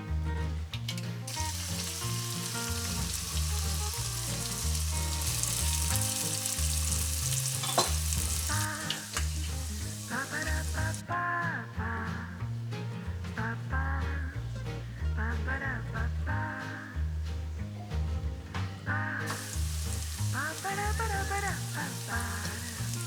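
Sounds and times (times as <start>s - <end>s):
food sizzling in oil: 0.9s - 11.0s, 19.3s - 23.0s
utensil knocking against pan: 7.4s - 10.8s.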